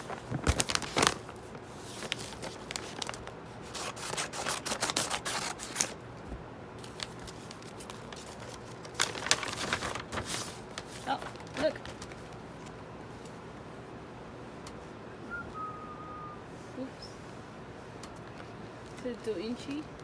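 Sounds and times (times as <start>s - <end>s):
packaging rustling and clicking: 0.0s - 6.0s, 6.8s - 12.8s.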